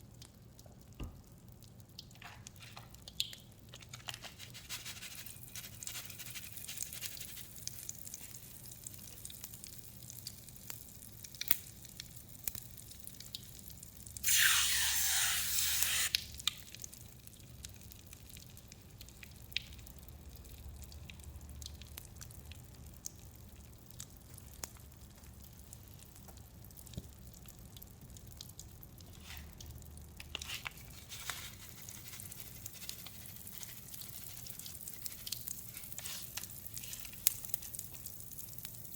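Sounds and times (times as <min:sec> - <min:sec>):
bath foam crackling and fizzing: 0:00.1 - 0:38.9
aerosol foam spray hissing: 0:14.3 - 0:16.2.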